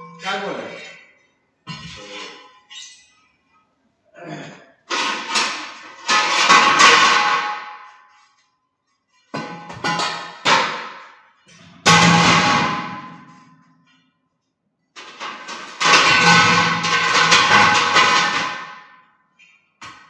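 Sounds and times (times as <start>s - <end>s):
heavy metal pieces clanging: 4.9s - 8.4s, 15.0s - 19.7s.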